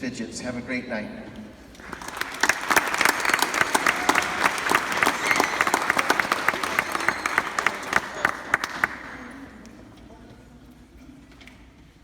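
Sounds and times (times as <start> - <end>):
audience applauding: 1.8 - 9.8.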